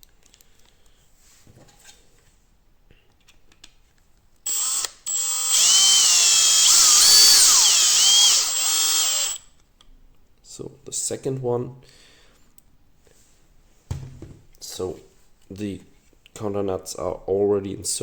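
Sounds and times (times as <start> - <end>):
power drill driving a screw: 4.5 - 9.4.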